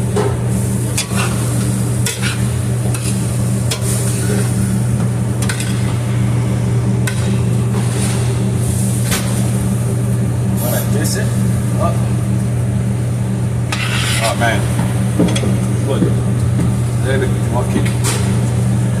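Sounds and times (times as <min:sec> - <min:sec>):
steady low hum: 0:00.0 - 0:19.0
utensil scraping and knocking pan: 0:13.7 - 0:14.4.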